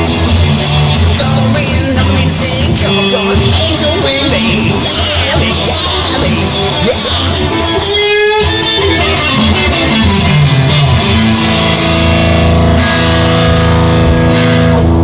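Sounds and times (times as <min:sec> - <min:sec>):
instrumental rock guitar and drums: 0:00.0 - 0:15.0.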